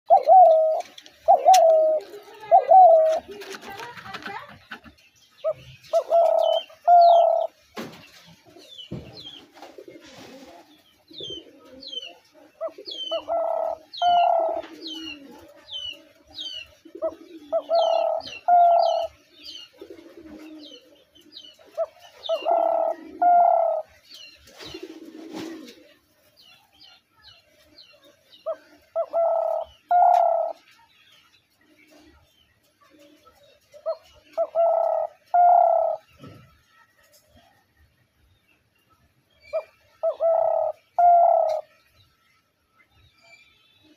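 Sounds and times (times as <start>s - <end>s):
dove cooing: 0.1s - 4.8s, 5.4s - 7.6s, 8.5s - 26.1s, 28.0s - 30.7s, 32.8s - 36.5s, 39.5s - 41.7s
small birds chirping: 0.1s - 43.9s.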